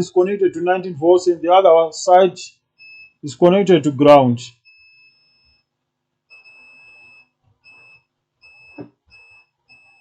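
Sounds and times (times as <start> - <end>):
multimeter continuity beeps: 2.5 - 3.3, 4.5 - 10.0.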